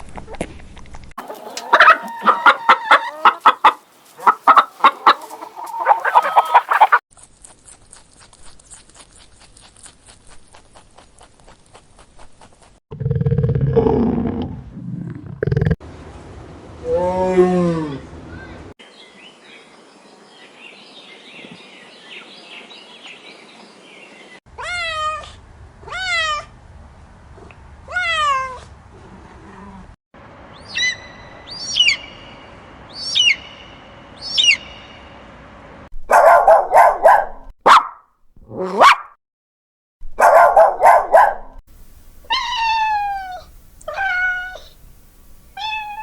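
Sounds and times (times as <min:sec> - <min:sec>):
cat meowing: 0:42.3 - 0:44.8, 0:45.6 - 0:46.0.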